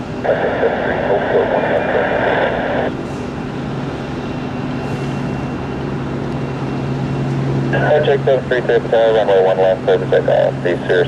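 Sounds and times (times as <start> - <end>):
low steady hum: 0.0 - 3.0
aircraft engine: 0.0 - 11.0
radio hiss: 0.2 - 3.0, 7.7 - 11.0.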